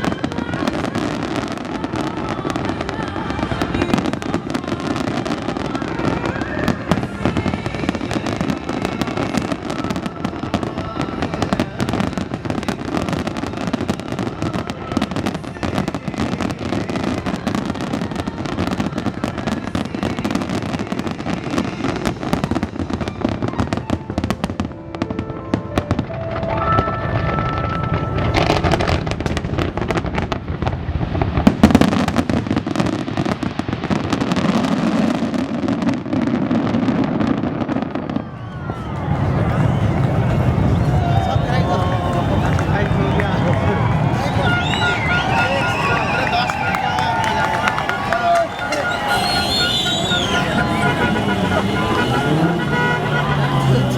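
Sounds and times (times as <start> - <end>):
fireworks bangs and crackling: 0.0 - 53.9
music playing: 24.0 - 29.4, 38.6 - 53.9.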